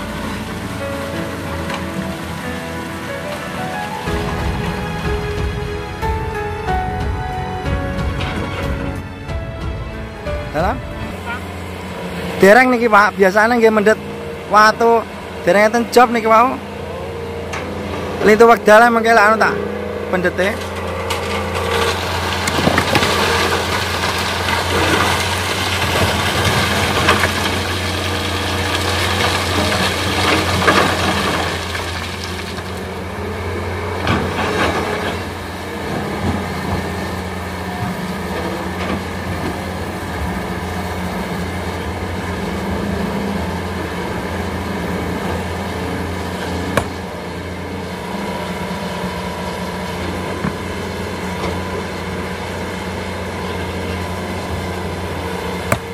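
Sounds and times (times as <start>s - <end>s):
heavy diesel engine running: 0.0s - 55.9s.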